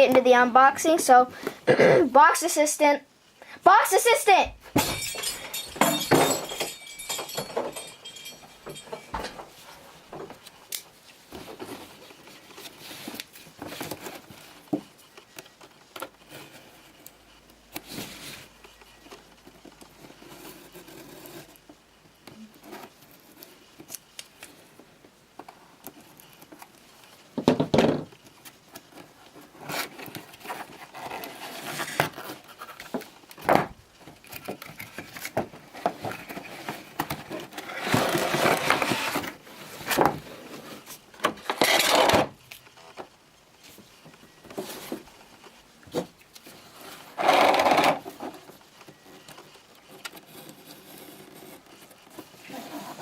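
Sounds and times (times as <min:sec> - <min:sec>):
cardboard boxes scraping and rustling: 0:29.0 - 0:33.2, 0:34.9 - 0:42.4, 0:44.3 - 0:49.3, 0:49.9 - 0:53.0.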